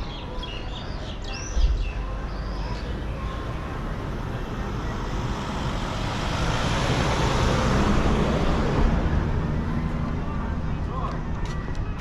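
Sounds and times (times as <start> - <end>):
car driving past: 2.4 - 10.4.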